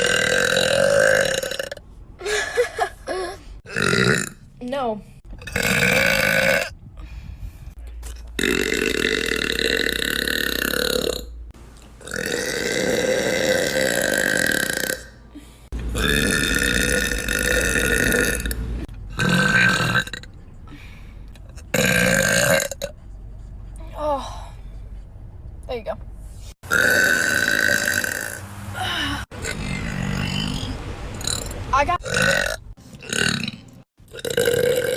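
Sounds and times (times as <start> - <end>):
woman burping: 0.0 - 2.7, 3.7 - 4.4, 12.0 - 15.2, 15.9 - 18.6.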